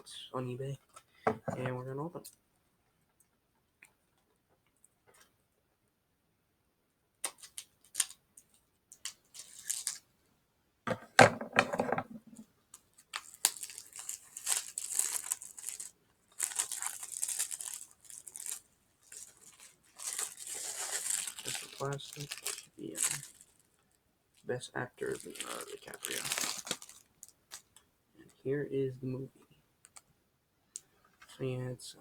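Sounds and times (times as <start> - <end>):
plastic wrap crinkling: 8.9 - 10.0, 12.3 - 23.9, 25.0 - 27.8.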